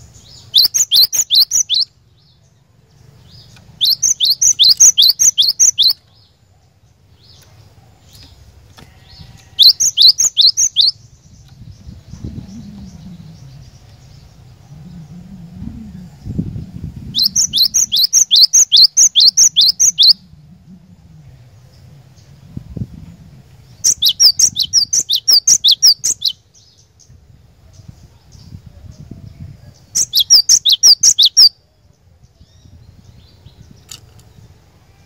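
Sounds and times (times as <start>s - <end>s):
bird singing high downslurred notes: 0.1s - 2.4s, 3.2s - 6.3s, 8.2s - 26.8s.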